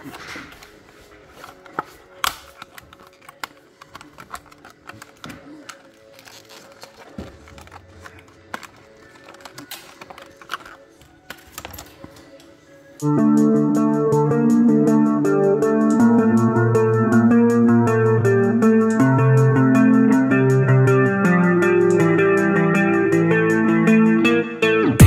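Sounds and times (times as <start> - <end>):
small tools clicking and tapping: 1.4 - 12.4.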